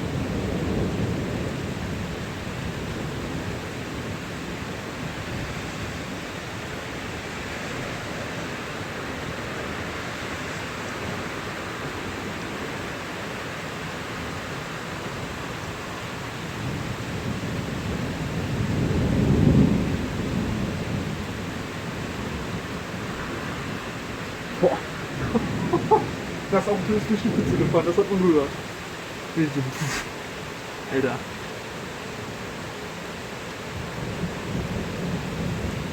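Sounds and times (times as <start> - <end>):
heavy rain: 0.0 - 35.9
car splashing through flooded street: 20.0 - 35.9.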